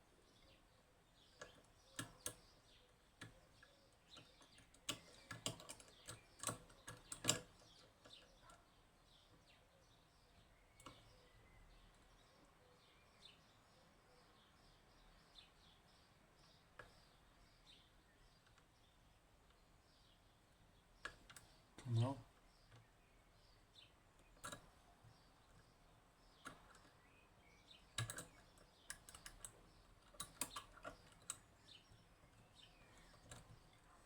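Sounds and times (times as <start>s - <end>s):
faint bird chirps: 0.0s - 34.0s
lock-picking tools clicking: 1.3s - 8.2s, 24.2s - 24.8s, 27.7s - 33.7s.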